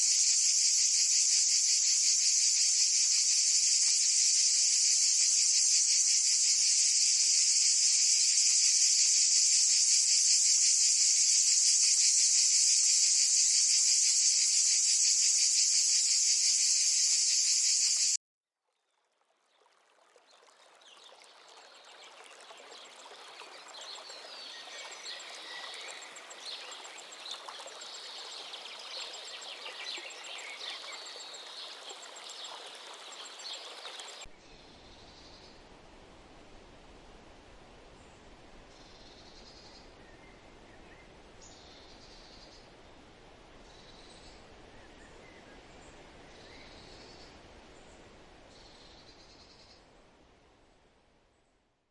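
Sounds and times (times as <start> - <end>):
high-pitched insect chorus: 0.0 - 18.2, 22.5 - 34.3
small insect calls: 0.0 - 18.2, 22.4 - 34.3.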